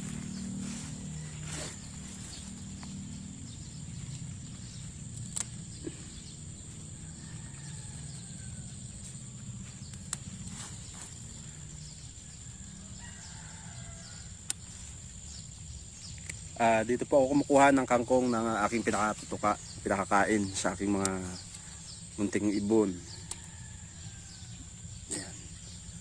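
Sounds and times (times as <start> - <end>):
low rumble: 0.0 - 7.1
steady high whine: 0.0 - 12.9
faint roosters crowing: 5.7 - 15.5, 20.3 - 26.0.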